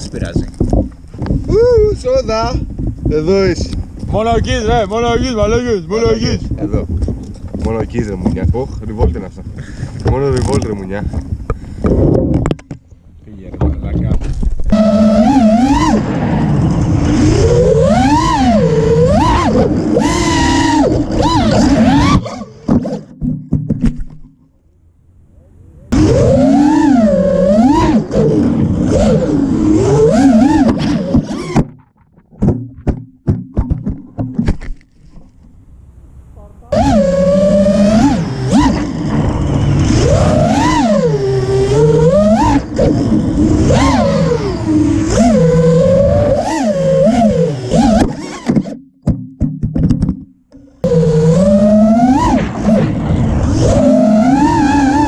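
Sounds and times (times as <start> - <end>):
drone motors whining: 14.1 - 23.4, 25.2 - 31.8, 35.7 - 48.8, 50.1 - 55.0.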